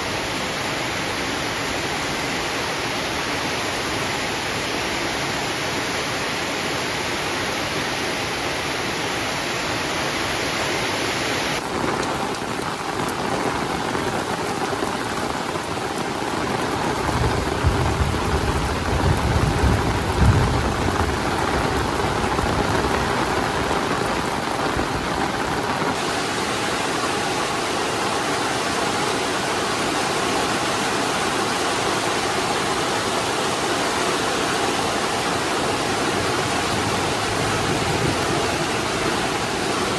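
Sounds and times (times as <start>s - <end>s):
heavy rain falling: 0.0s - 39.9s
low rumble of thunder: 17.0s - 23.1s.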